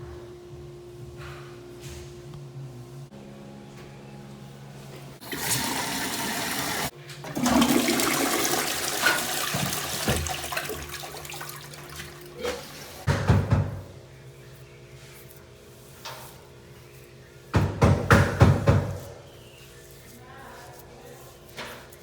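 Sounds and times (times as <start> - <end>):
toilet flushing: 5.2 - 13.1.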